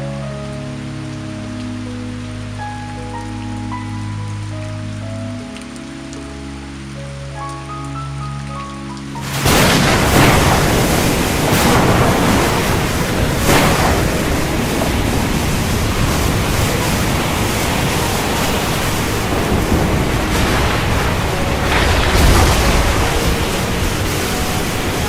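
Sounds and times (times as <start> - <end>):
heavy rain pouring: 0.0 - 25.0
low rumble: 9.2 - 25.0.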